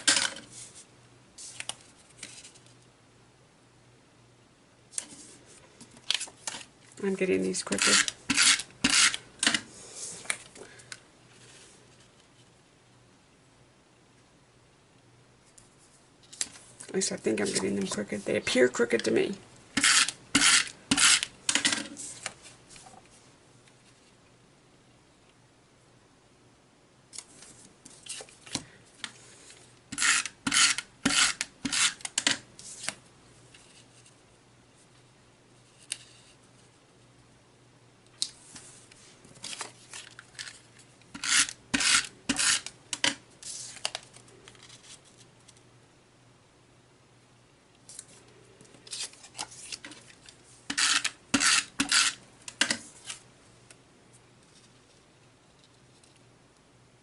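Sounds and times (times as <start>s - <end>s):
paper rasping and rustling: 7.6s - 10.4s, 19.8s - 22.4s, 38.5s - 42.7s, 48.9s - 53.2s.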